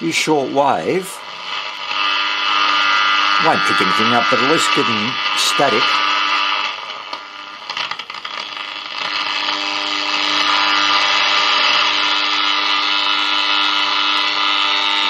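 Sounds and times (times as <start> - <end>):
steady hum tones: 0.0 - 7.7
radio crackling: 0.0 - 15.0
radio static hiss: 0.0 - 15.0.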